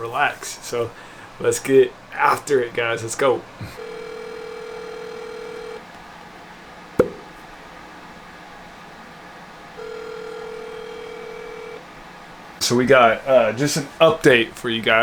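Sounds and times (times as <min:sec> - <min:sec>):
telephone ringback tone: 0:03.8 - 0:05.8, 0:09.8 - 0:11.8.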